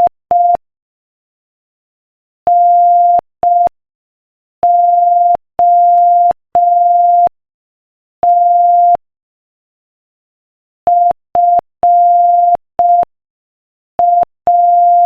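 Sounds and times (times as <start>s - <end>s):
morse code beeps: 4.7s - 7.3s, 10.9s - 13.1s, 14.0s - 15.0s.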